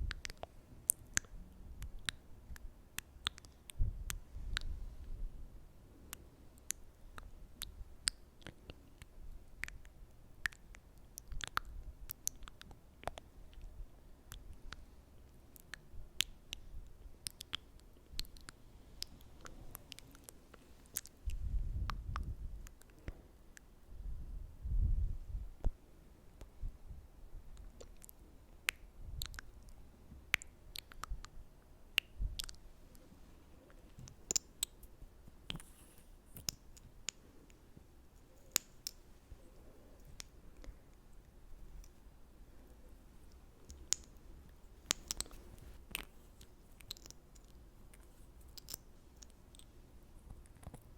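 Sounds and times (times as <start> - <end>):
wet mouth clicks and smacks: 0.1 - 4.7, 6.1 - 13.7, 15.6 - 23.7, 27.6 - 31.4, 32.0 - 33.0, 33.7 - 37.6, 43.3 - 50.9.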